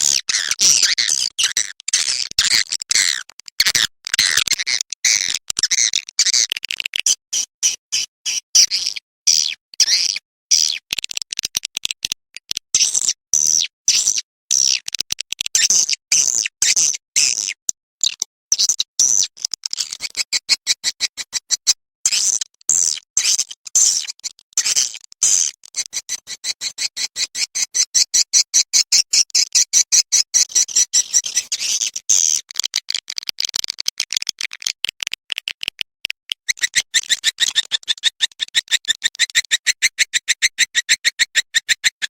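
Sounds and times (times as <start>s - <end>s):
high-pitched bird twittering: 25.8s - 32.4s, 36.5s - 42.0s.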